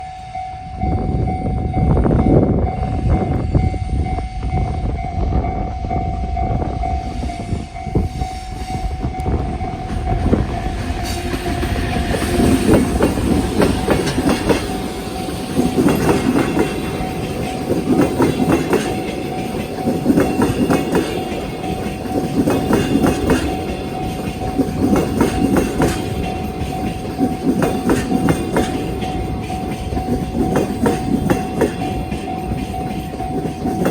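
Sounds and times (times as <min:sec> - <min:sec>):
train passing close by: 0:00.0 - 0:33.9
wheels clacking over rail joints: 0:09.1 - 0:33.9.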